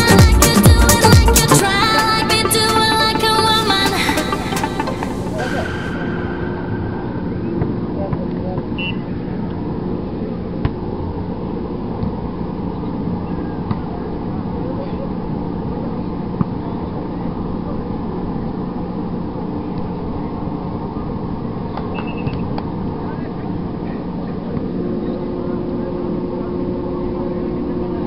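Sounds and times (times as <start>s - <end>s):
murmur of voices: 1.5s - 8.7s.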